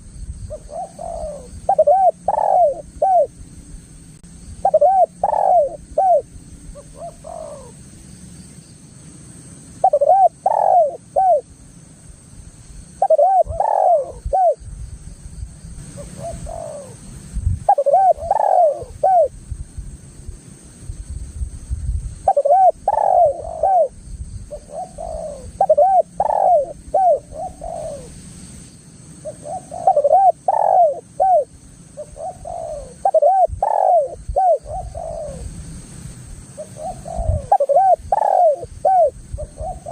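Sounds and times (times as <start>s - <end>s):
low background rumble: 0.0s - 39.9s
dove cooing: 0.5s - 3.3s, 4.6s - 7.8s, 9.8s - 11.5s, 13.0s - 14.6s, 15.8s - 19.4s, 22.3s - 28.2s, 29.2s - 35.6s, 36.5s - 39.9s.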